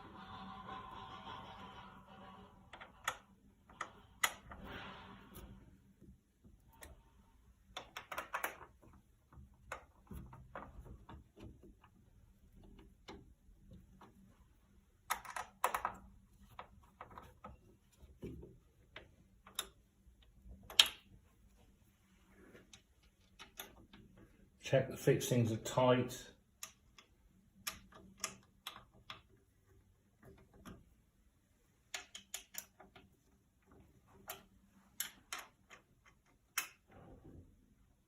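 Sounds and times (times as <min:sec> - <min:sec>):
small clicks and ticks on metal: 0:06.6 - 0:21.2, 0:22.6 - 0:24.4, 0:26.4 - 0:37.0.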